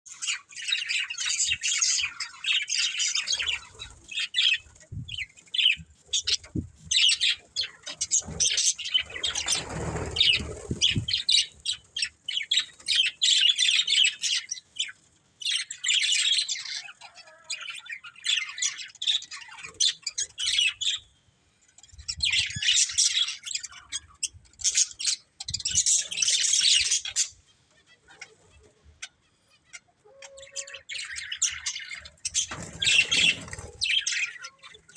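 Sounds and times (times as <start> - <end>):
budgerigars chirping: 0.1 - 21.1, 22.2 - 34.9.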